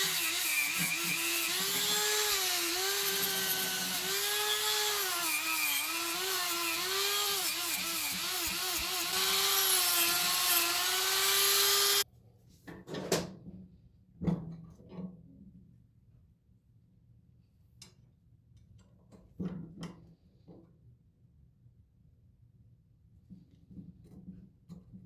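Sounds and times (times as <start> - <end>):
high-speed power tool whining: 0.0 - 12.0.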